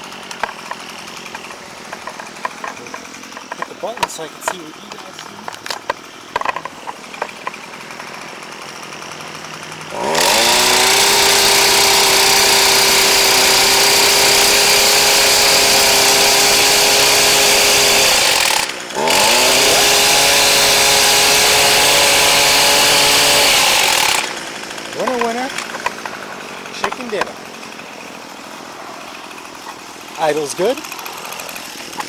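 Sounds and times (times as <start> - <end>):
hedge trimmer engine revving: 0.0 - 32.0.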